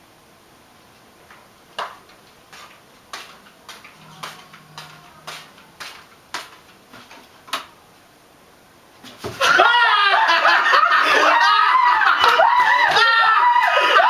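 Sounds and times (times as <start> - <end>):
sharp evenly spaced taps: 1.8 - 6.8.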